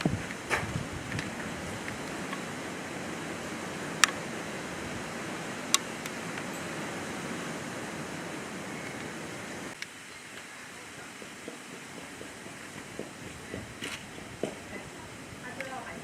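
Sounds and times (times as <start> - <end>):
rushing background noise: 0.0 - 16.0.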